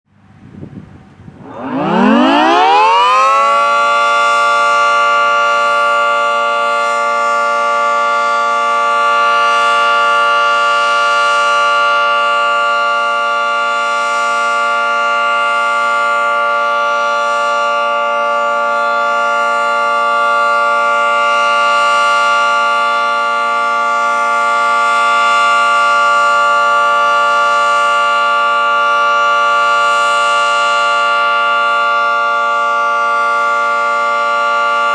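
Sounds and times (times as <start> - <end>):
two-tone warning siren: 0.3 - 34.9.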